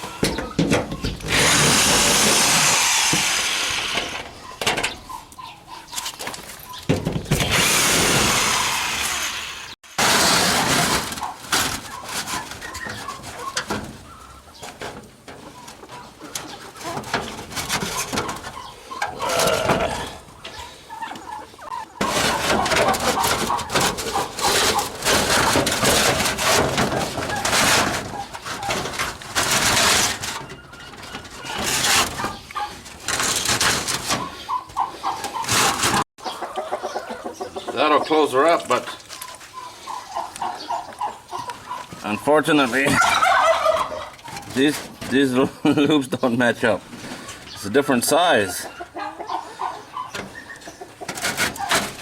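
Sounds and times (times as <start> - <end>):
scraping and rattling: 0.0 - 5.2, 5.9 - 36.1, 51.0 - 52.0
chickens clucking: 0.0 - 7.6, 8.4 - 52.0.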